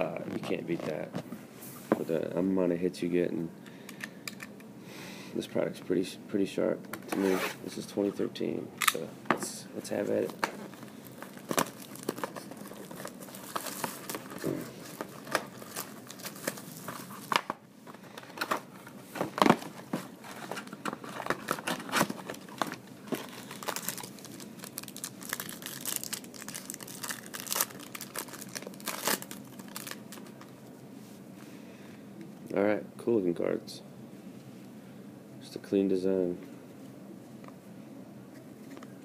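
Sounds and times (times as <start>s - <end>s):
packaging crinkling and tearing: 9.8s - 30.5s.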